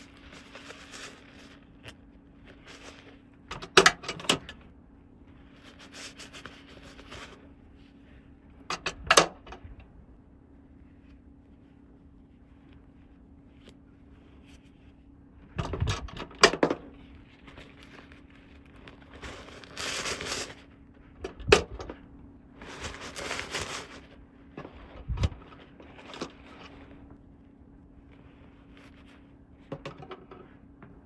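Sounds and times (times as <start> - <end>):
packaging rustling: 0.0 - 3.8, 17.3 - 27.1
faint steady hum: 0.0 - 31.0.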